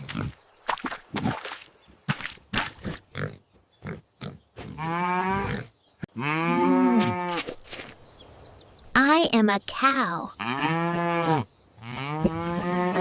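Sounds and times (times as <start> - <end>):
cow mooing: 6.2 - 7.4, 10.4 - 13.0.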